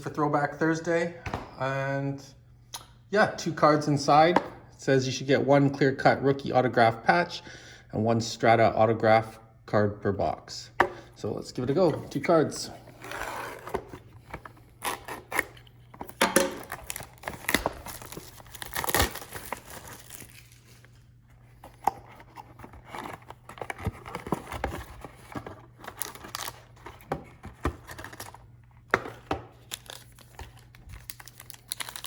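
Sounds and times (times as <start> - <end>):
packaging tearing and crinkling: 14.7 - 21.0, 21.8 - 28.5, 29.5 - 32.0.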